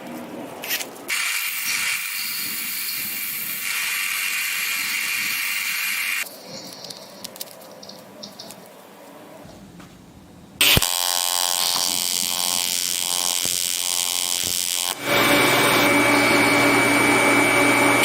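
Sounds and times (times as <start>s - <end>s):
welding arc hissing: 0.6s - 6.3s, 10.6s - 18.0s.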